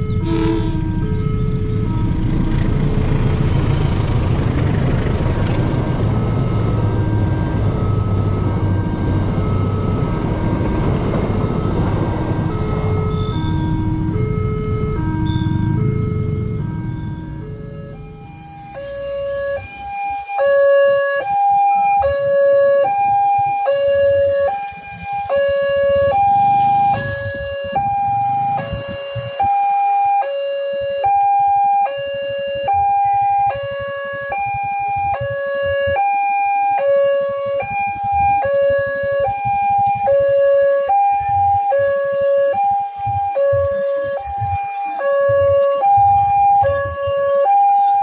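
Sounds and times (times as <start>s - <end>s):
low uneven rumble: 0.0s - 19.8s
two-tone hi-lo siren: 0.0s - 48.0s.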